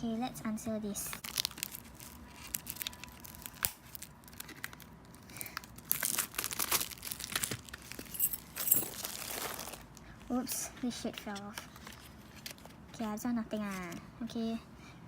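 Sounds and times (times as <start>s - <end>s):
plastic wrap crinkling: 1.1s - 10.0s.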